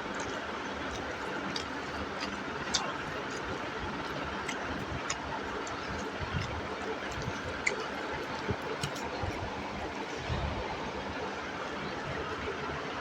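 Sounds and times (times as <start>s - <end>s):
wet chewing and mouth clicks: 0.0s - 10.0s.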